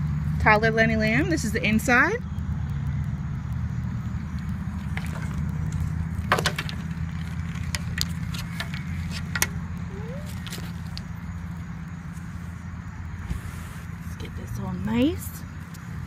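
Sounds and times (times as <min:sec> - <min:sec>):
buckles clicking and rattling: 0:04.3 - 0:09.7.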